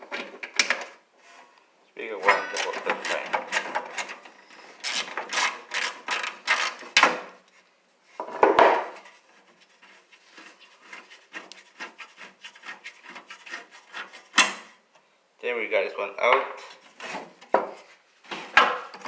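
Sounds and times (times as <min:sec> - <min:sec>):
scraping rub: 0:08.8 - 0:14.8, 0:16.6 - 0:18.6.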